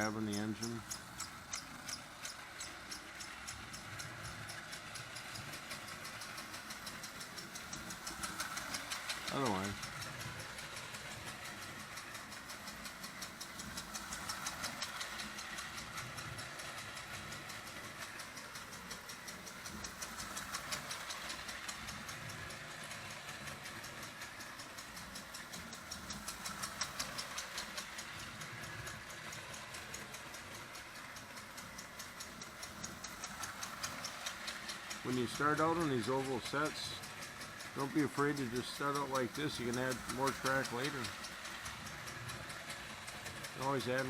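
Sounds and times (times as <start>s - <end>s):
toy train chugging on metal track: 0.0s - 44.0s.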